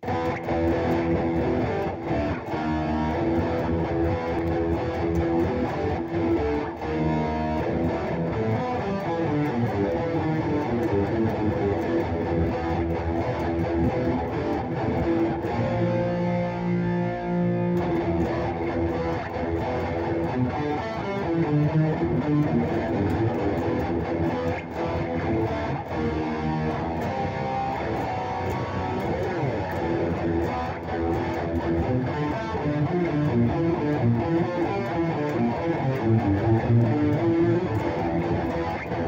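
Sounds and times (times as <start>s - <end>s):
guitar music: 0.0s - 39.0s.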